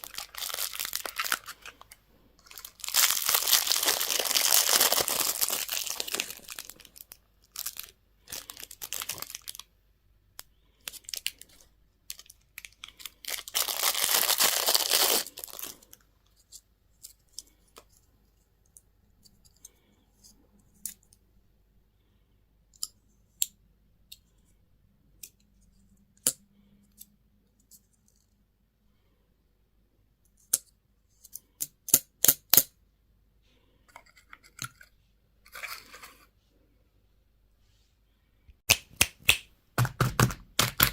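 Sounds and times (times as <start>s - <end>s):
packaging tearing and crinkling: 0.0s - 9.6s, 10.9s - 15.9s.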